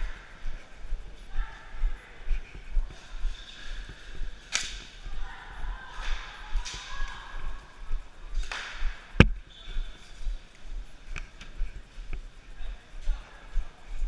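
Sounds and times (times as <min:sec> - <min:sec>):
footsteps low thuds: 0:00.0 - 0:12.3
faint distant voices: 0:00.0 - 0:14.0
sharp crack: 0:04.4 - 0:05.0, 0:08.4 - 0:09.4.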